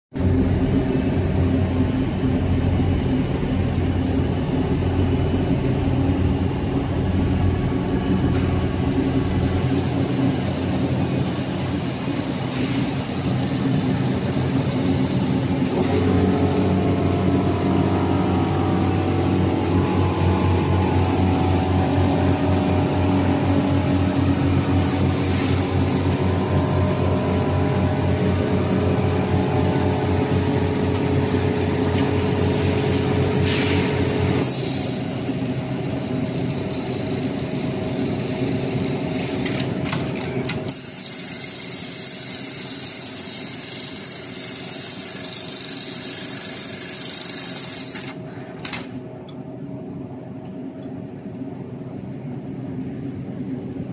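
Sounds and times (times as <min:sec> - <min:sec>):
hissing air bursts: 0:40.7 - 0:48.0.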